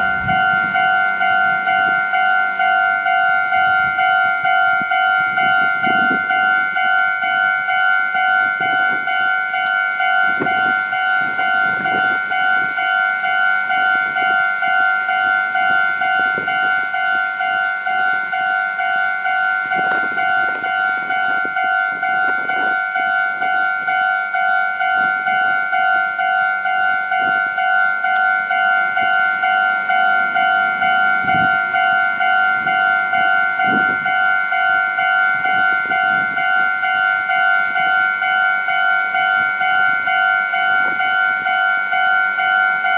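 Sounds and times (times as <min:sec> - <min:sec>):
level crossing warning bell: 0:00.0 - 0:42.9.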